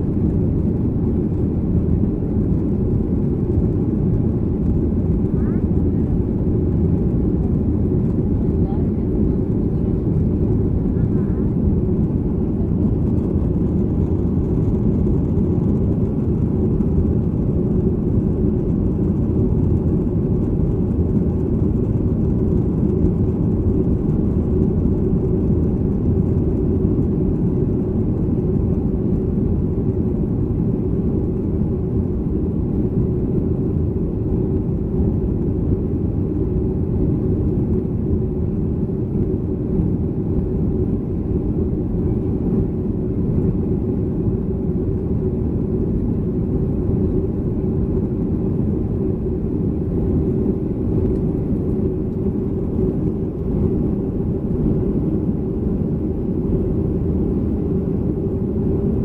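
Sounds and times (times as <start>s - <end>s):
airplane cabin engine rumble: 0.0s - 59.0s.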